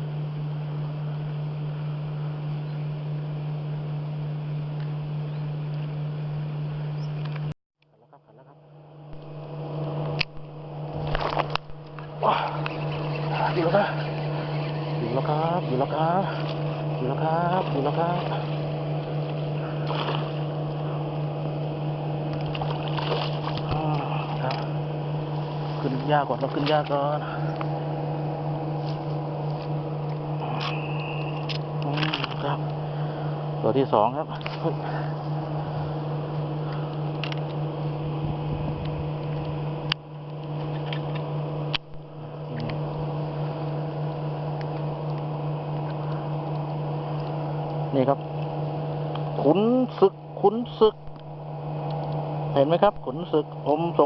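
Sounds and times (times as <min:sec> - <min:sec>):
low mechanical hum: 0:00.0 - 0:54.0
small boat engine drone: 0:00.0 - 0:54.0.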